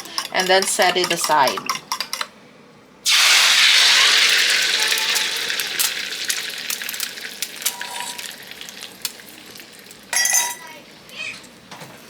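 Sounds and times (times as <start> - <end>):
eggs sizzling in hot fat: 3.0 - 11.3.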